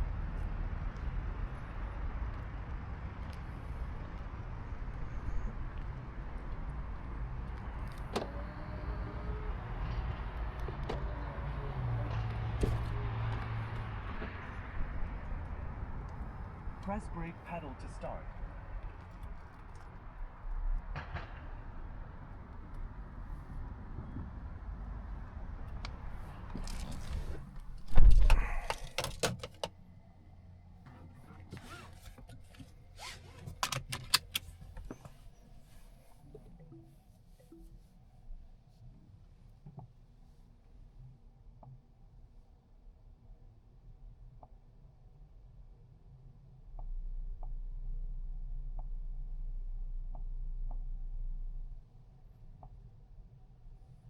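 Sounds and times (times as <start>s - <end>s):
low rumble: 0.0s - 28.9s, 46.6s - 53.0s
clicks and rattles: 26.3s - 29.8s, 31.4s - 35.2s.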